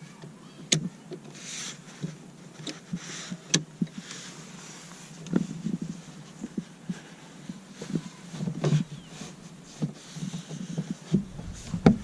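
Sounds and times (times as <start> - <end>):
low rumble: 11.2 - 12.0
steady low hum: 11.2 - 12.0.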